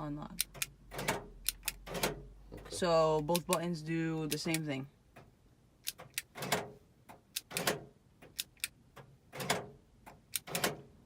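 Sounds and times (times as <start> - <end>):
door lock actuators clunking: 0.5 - 2.8, 5.8 - 11.0.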